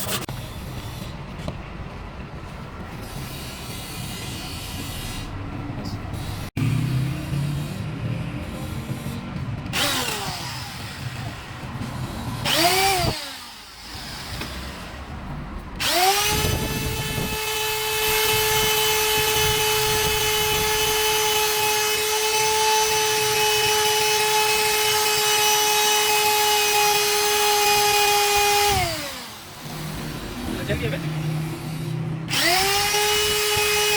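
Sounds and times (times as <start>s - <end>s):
power tool motor whining: 8.5s - 14.9s, 15.8s - 33.9s.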